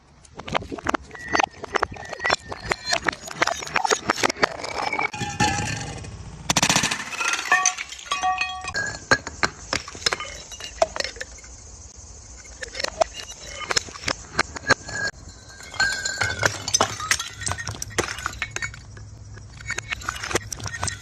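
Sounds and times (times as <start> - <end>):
fast rattle: 0.5 - 11.8
glass bottles clinking and breaking: 0.8 - 11.5, 12.7 - 21.0.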